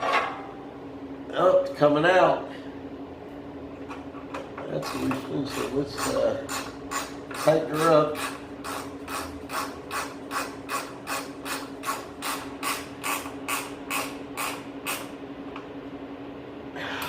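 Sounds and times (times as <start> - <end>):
steady low hum: 0.0 - 17.0
ratchet wrench clicking: 6.0 - 15.0.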